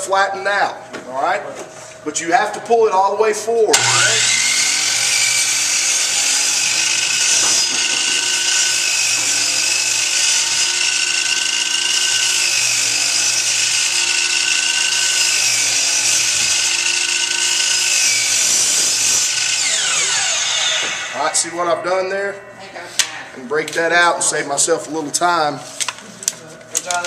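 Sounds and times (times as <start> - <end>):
chop saw whining cutting wood: 3.7 - 21.7.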